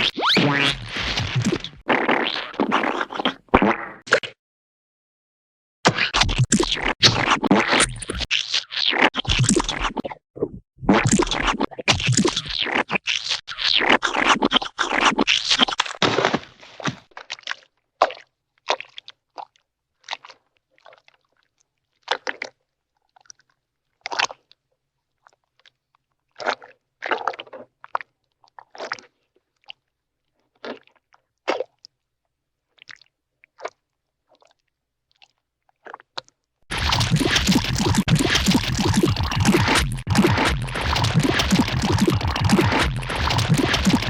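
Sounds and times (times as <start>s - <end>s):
cartoon splat sound effects: 0.0s - 4.4s, 36.7s - 44.0s.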